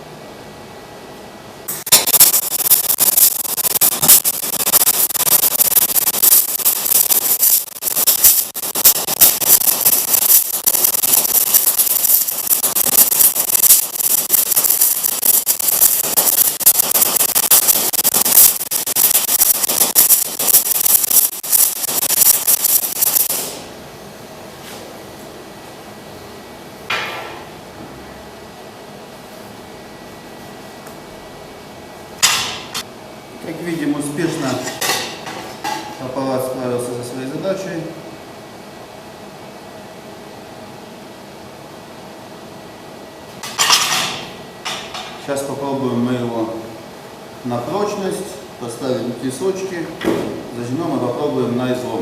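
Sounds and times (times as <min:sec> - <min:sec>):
welding arc crackling hiss: 0:01.7 - 0:23.7, 0:43.4 - 0:45.2.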